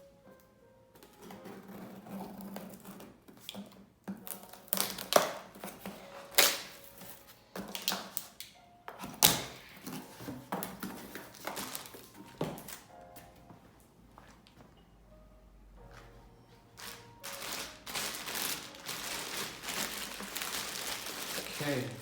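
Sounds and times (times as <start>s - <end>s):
cardboard box being opened: 1.2s - 3.5s, 9.5s - 12.8s
packaging rustling: 9.2s - 12.9s, 16.8s - 22.0s.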